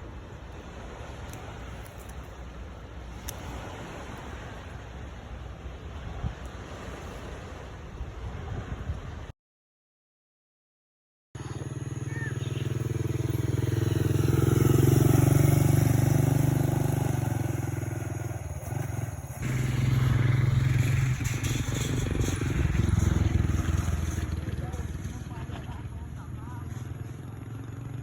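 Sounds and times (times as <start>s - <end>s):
small engine running: 18.7s - 28.0s.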